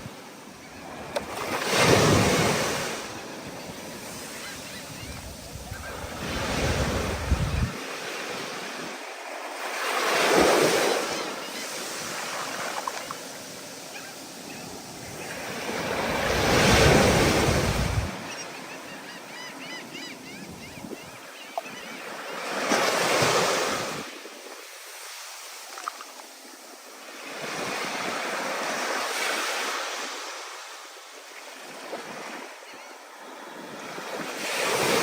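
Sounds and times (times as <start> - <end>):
waves breaking: 0.0 - 18.7
wind rumbling on microphone: 4.8 - 7.8, 16.1 - 18.2.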